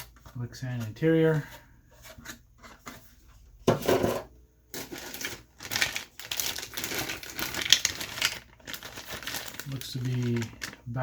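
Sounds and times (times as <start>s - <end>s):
plastic packaging rustling: 2.2s - 11.0s
plastic packaging crinkling: 4.7s - 11.0s
plastic parts clicking: 5.7s - 10.8s.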